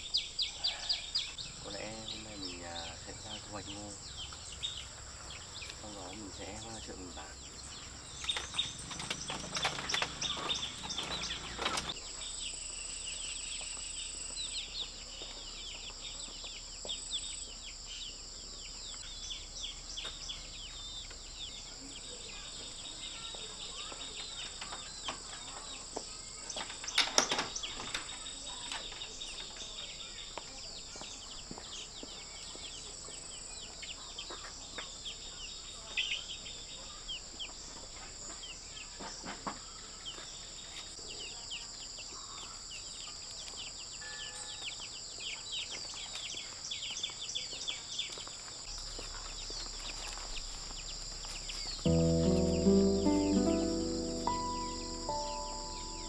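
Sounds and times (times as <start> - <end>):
bird chirps: 0.0 - 12.5, 51.6 - 56.0
insects droning: 0.0 - 39.2, 48.7 - 56.0.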